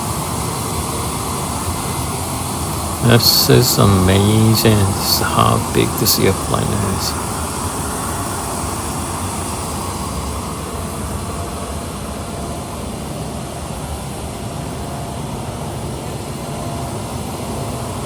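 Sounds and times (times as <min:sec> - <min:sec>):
steady rumbling noise: 0:02.6 - 0:08.7.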